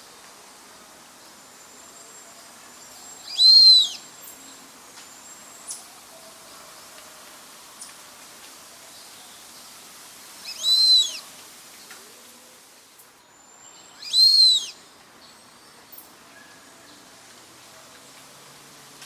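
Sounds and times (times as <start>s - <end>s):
duck whistled calls: 3.3s - 4.0s, 10.5s - 11.2s, 14.0s - 14.8s.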